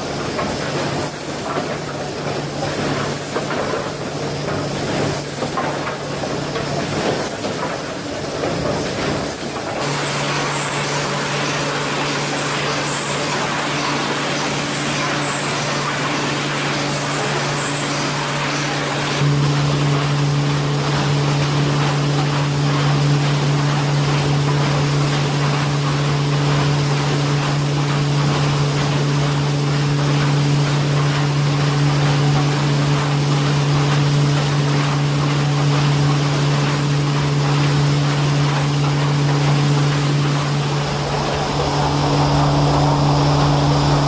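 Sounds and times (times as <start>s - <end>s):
machine humming: 8.0s - 44.0s
even rushing noise: 40.3s - 44.0s.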